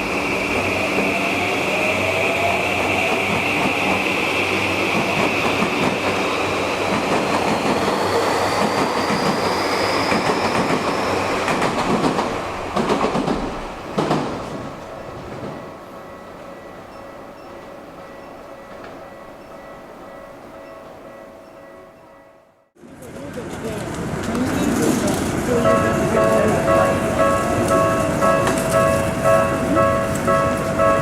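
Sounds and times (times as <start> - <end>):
electric train inverter whine: 0.0 - 12.8.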